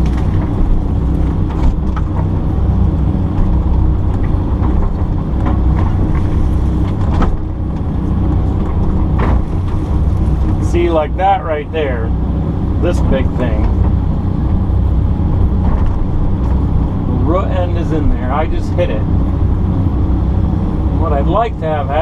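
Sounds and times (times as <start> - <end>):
excavator diesel engine running: 0.0 - 22.0.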